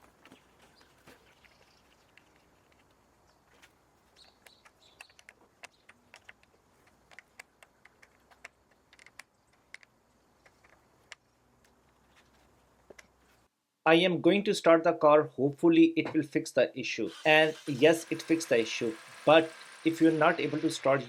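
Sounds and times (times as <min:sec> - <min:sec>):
faint irregular clicks: 0:04.2 - 0:13.2.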